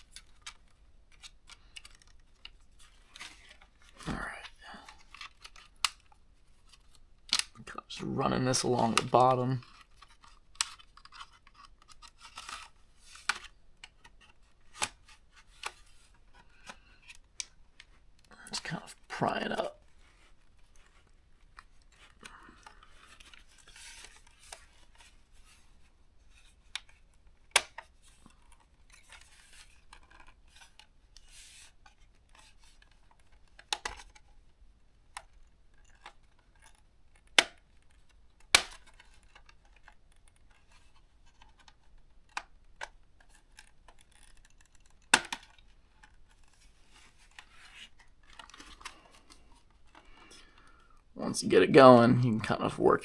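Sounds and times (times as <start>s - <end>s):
plastic clips snapping loose: 7.2s - 7.6s, 26.7s - 29.3s, 33.4s - 34.2s, 35.1s - 40.5s, 41.4s - 46.2s.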